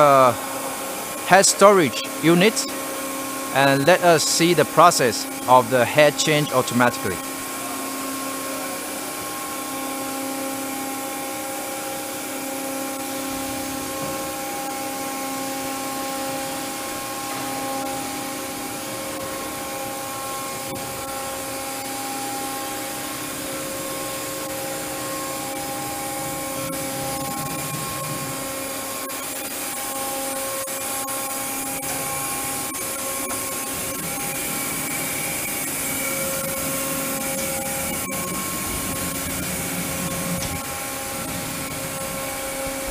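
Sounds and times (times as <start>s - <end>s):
motor whine: 7.1s - 42.9s
mechanical whir: 9.2s - 42.9s.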